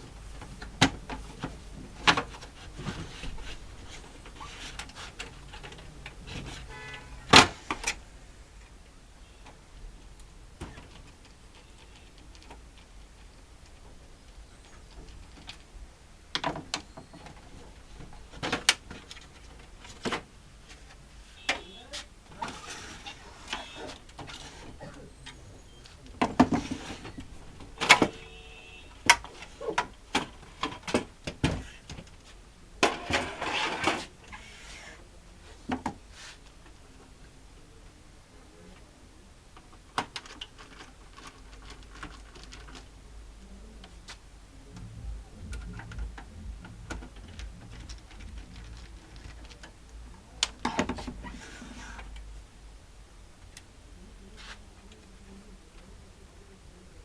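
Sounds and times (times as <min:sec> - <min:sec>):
printer parts rattling and scraping: 0:00.3 - 0:08.0, 0:22.3 - 0:28.4, 0:29.1 - 0:34.9, 0:39.7 - 0:43.0, 0:44.9 - 0:49.8, 0:50.5 - 0:52.2
plastic and metal clicks and knocks: 0:44.8 - 0:49.8.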